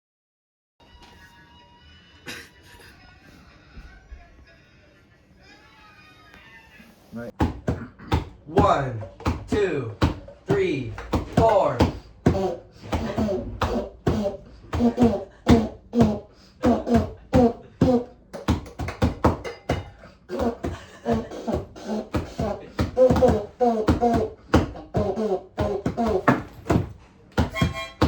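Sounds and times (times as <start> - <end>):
vocal beatboxing: 7.6 - 28.0.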